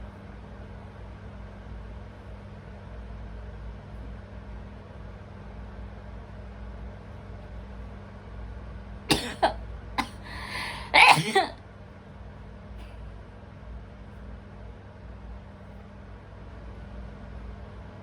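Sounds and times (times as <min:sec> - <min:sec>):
faint steady background hum: 0:00.0 - 0:18.0
person sneezing: 0:09.1 - 0:11.6.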